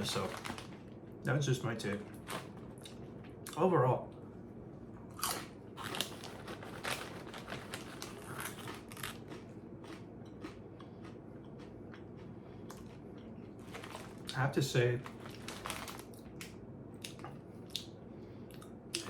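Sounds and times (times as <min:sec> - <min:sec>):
person chewing crunchy snacks: 0:05.1 - 0:14.4.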